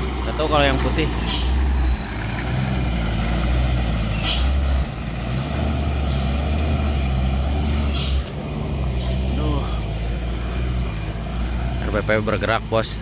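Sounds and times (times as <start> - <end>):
diesel truck engine rumbling: 0.0 - 13.0
air brake hisses: 4.1 - 4.9, 7.9 - 8.3.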